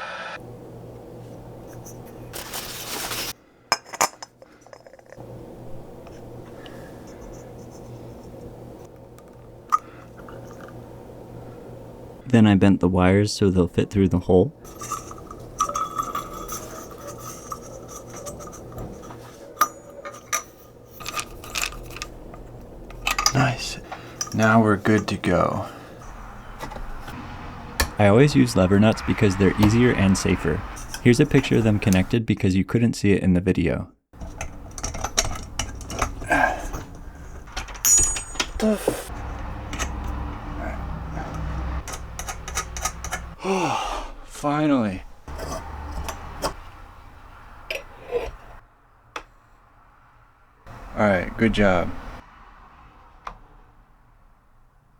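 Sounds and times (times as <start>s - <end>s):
metal parts and wire scraping: 1.3s - 5.2s, 6.0s - 10.8s, 14.6s - 32.2s, 34.2s - 43.4s, 45.0s - 48.6s.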